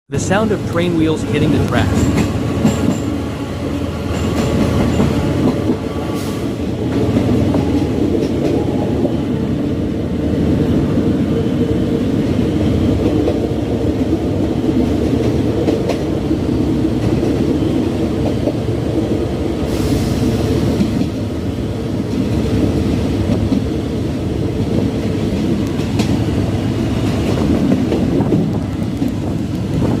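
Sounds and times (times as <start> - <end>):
train wheels rumbling on rails: 0.1 - 30.0.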